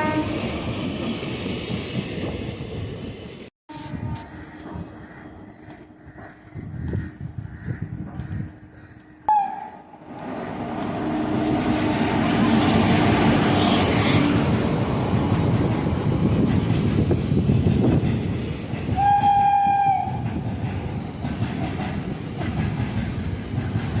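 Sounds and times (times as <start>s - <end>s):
train horn blast: 0.0s - 0.4s, 11.0s - 14.4s, 19.0s - 20.2s
train wheels clattering on rails: 11.6s - 24.0s.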